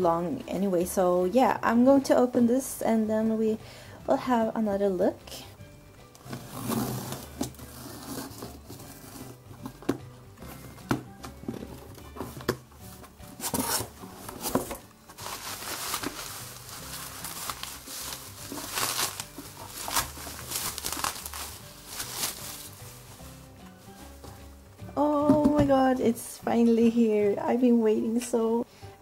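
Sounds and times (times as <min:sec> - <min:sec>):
background music: 0:00.0 - 0:29.0
package wrapping tearing: 0:13.4 - 0:23.1.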